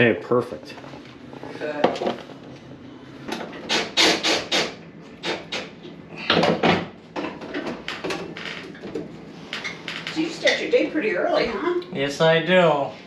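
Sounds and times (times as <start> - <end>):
hard objects knocking and clattering: 6.3 - 10.6.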